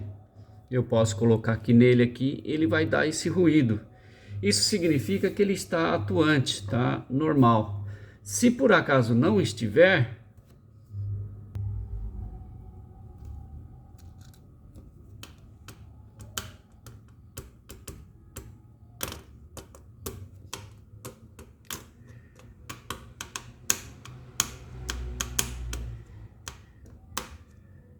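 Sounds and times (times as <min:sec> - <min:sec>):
faint low hum: 0:00.0 - 0:19.4
metal clicks and taps: 0:14.0 - 0:27.8.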